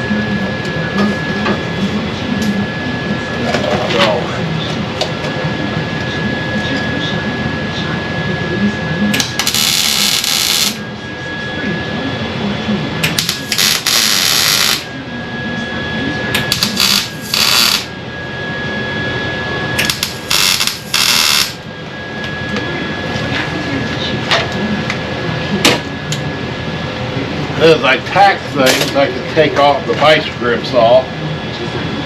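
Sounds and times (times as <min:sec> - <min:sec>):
steady welder hum: 0:00.0 - 0:32.0
welding arc bursts: 0:09.1 - 0:10.8, 0:13.0 - 0:14.9, 0:16.5 - 0:17.9, 0:19.8 - 0:21.6.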